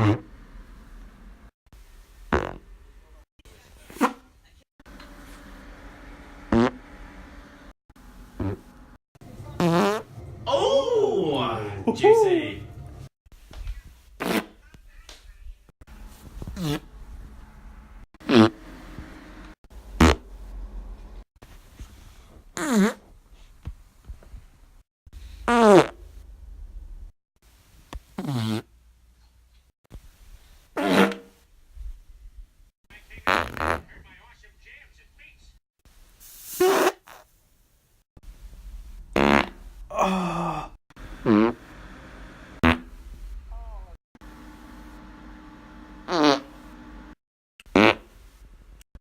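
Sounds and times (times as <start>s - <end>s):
farts: 0.0s - 0.3s, 2.3s - 2.7s, 6.5s - 6.8s, 8.4s - 8.7s, 9.4s - 10.3s, 14.2s - 14.6s, 16.4s - 16.9s, 18.2s - 18.6s, 20.0s - 20.3s, 22.5s - 23.1s, 25.5s - 26.0s, 28.2s - 28.7s, 30.8s - 31.3s, 33.2s - 33.9s, 36.5s - 37.3s, 39.1s - 39.6s, 41.2s - 41.6s, 42.6s - 42.9s, 46.0s - 46.6s, 47.7s - 48.1s.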